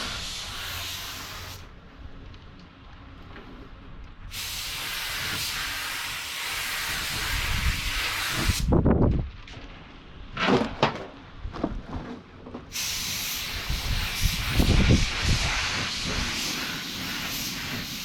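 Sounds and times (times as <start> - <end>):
compressed air hissing: 0.0 - 1.7, 4.3 - 8.7, 12.7 - 18.0.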